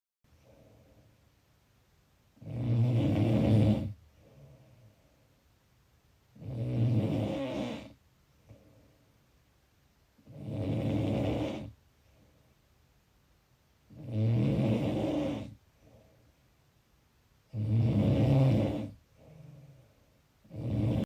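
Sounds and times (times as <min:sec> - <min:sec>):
faint breaths: 0:00.3 - 0:01.4, 0:03.9 - 0:05.6, 0:07.8 - 0:09.4, 0:11.6 - 0:12.8, 0:14.8 - 0:16.7, 0:18.6 - 0:21.0
person snoring: 0:02.4 - 0:04.9, 0:06.4 - 0:08.8, 0:10.2 - 0:11.8, 0:13.9 - 0:16.0, 0:17.5 - 0:19.8, 0:20.4 - 0:21.0.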